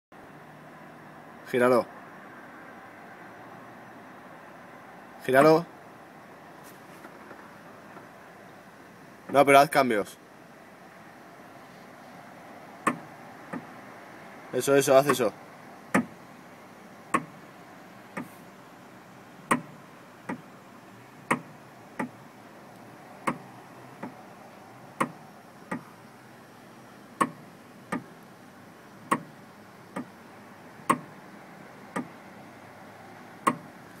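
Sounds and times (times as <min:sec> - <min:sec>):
car clicking: 0:12.8 - 0:13.7, 0:15.0 - 0:15.3, 0:15.9 - 0:16.2, 0:17.1 - 0:17.4, 0:18.1 - 0:18.4, 0:19.4 - 0:20.5, 0:21.2 - 0:26.0, 0:27.2 - 0:28.4, 0:29.0 - 0:31.2, 0:31.9 - 0:32.2, 0:33.4 - 0:33.8.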